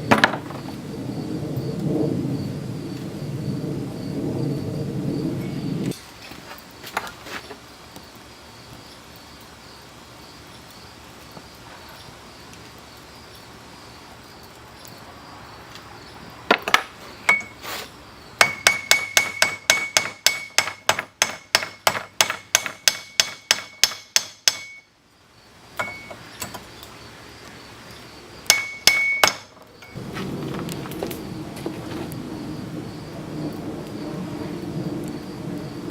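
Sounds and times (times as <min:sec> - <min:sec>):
steady low rumble: 0:00.0 - 0:06.0, 0:30.0 - 0:35.9
hammer ringing on anvil: 0:22.6 - 0:24.9, 0:28.5 - 0:29.4.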